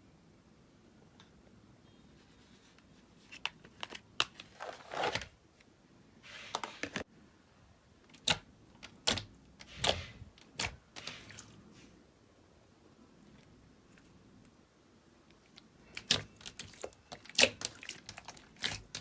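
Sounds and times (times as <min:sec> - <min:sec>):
slime squishing: 0:08.1 - 0:11.6, 0:15.4 - 0:19.0.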